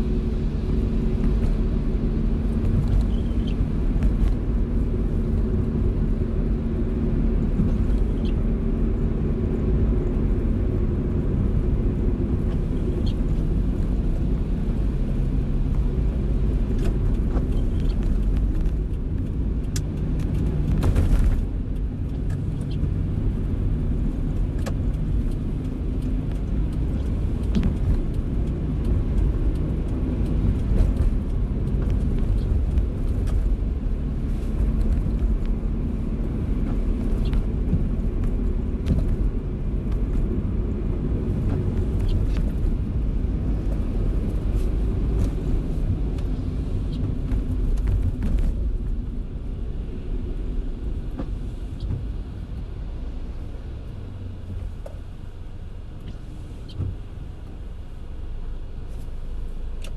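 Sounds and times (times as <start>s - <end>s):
engine and road rumble: 0.0s - 59.9s
raindrops ticking: 21.5s - 33.4s.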